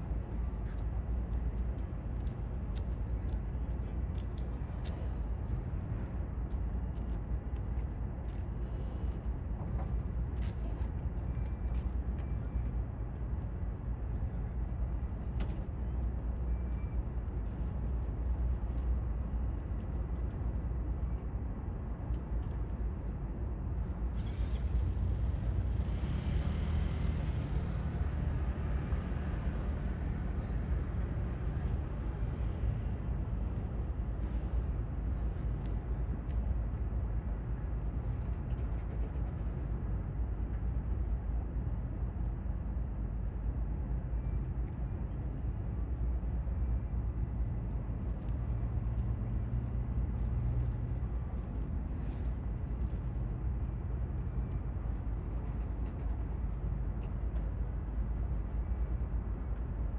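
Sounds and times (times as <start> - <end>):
low outdoor rumble: 0.0 - 59.9.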